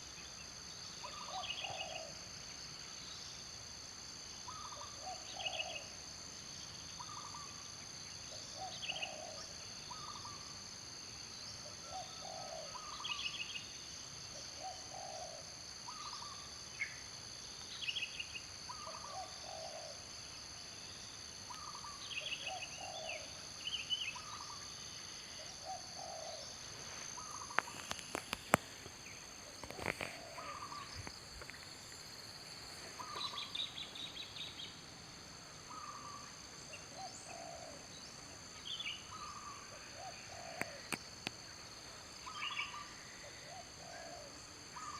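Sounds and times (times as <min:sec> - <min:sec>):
insect drone: 0:00.0 - 0:44.9
birds calling: 0:14.6 - 0:17.0, 0:18.7 - 0:20.0, 0:21.5 - 0:34.8, 0:35.7 - 0:41.0, 0:42.2 - 0:44.9.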